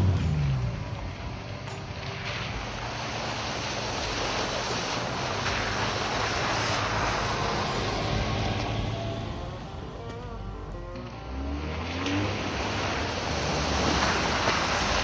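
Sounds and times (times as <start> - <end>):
vehicle engine running low: 0.0 - 15.0
steady rushing noise: 0.6 - 10.1.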